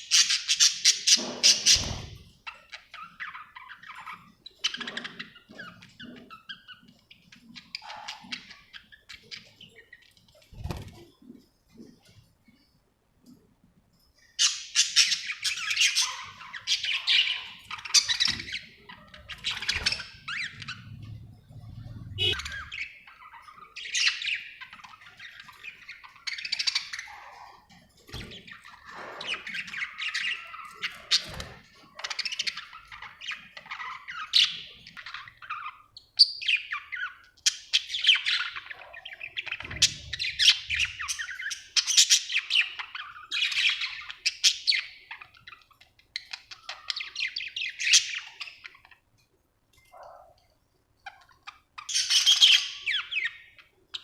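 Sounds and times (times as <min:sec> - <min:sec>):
budgerigar chirping and warbling: 0:07.7 - 0:09.8, 0:21.8 - 0:27.7.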